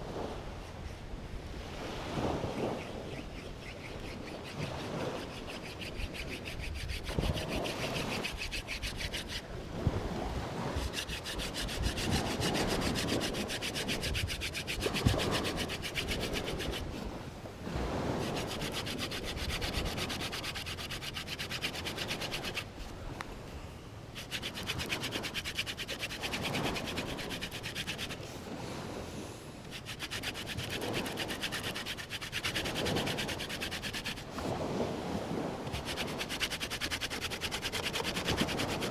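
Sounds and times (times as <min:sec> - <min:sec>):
wood-on-wood rubbing: 0:02.8 - 0:09.5, 0:10.6 - 0:17.0, 0:18.1 - 0:22.9, 0:24.2 - 0:28.3, 0:29.6 - 0:34.4, 0:35.7 - 0:38.9.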